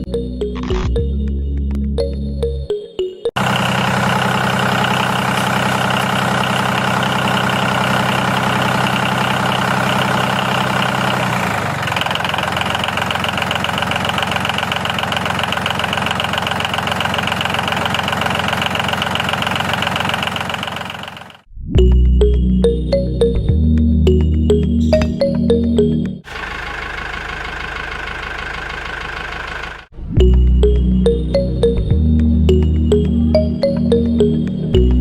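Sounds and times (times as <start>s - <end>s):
engine idling: 3.4s - 21.5s, 26.2s - 29.9s.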